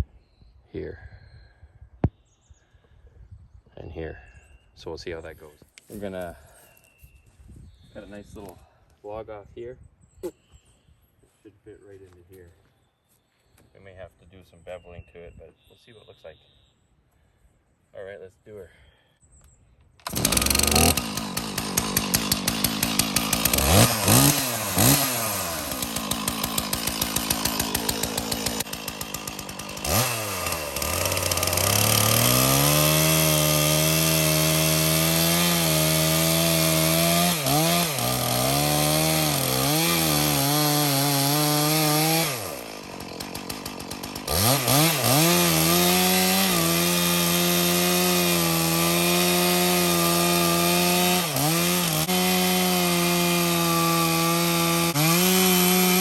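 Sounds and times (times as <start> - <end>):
chainsaw revving and cutting log: 20.0 - 56.0.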